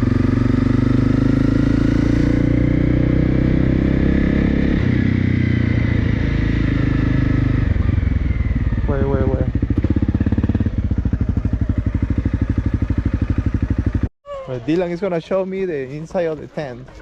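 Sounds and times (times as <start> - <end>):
motorcycle engine running: 0.0 - 14.1.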